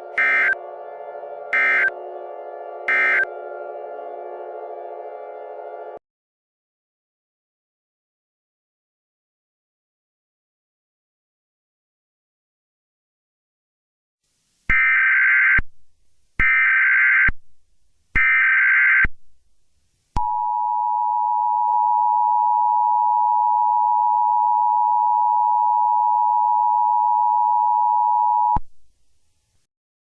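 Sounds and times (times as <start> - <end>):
dual-tone attention beep: 20.2 - 28.6.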